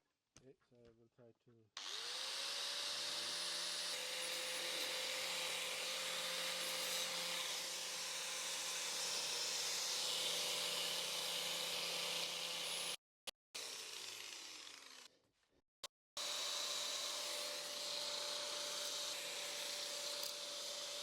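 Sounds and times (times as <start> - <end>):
angle grinder grinding steel: 16.2 - 21.0.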